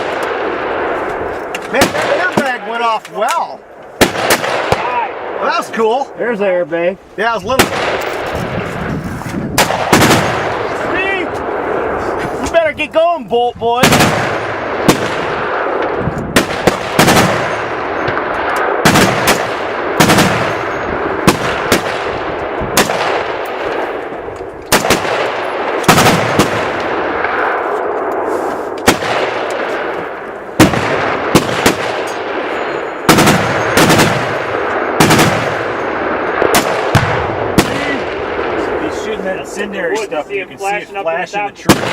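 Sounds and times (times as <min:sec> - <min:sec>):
gunshots echoing: 0:00.0 - 0:06.6, 0:07.2 - 0:12.6, 0:13.7 - 0:40.8, 0:41.6 - 0:41.9.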